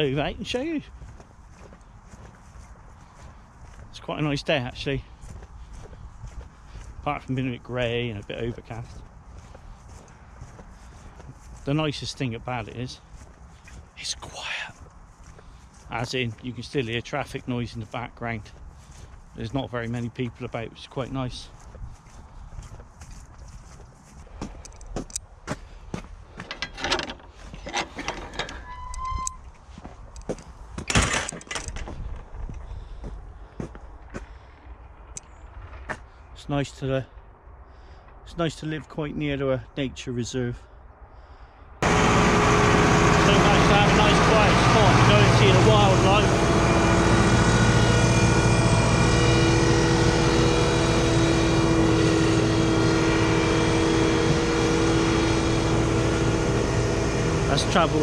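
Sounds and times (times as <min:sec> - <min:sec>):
distant traffic rumble: 0:00.0 - 0:31.0, 0:31.7 - 0:58.0
footsteps and scuffs: 0:00.9 - 0:04.0, 0:05.0 - 0:07.1, 0:08.4 - 0:11.8, 0:13.0 - 0:16.5, 0:21.5 - 0:26.4
engine drone: 0:41.8 - 0:58.0.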